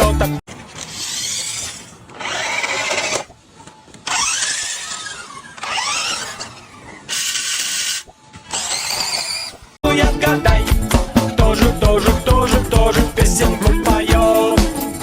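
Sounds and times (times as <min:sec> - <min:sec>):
mechanical whirring bursts: 0:00.7 - 0:09.8.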